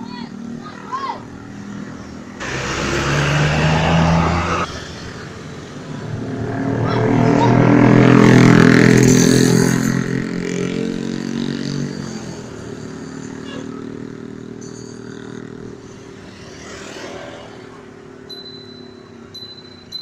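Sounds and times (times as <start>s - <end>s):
bus rushing past: 1.4s - 13.9s
bus engine running: 2.1s - 10.2s.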